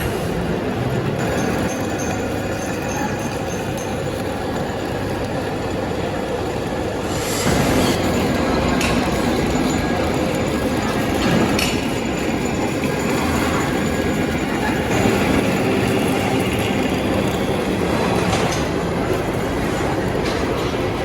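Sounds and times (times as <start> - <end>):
metal lathe running: 0.0 - 21.0.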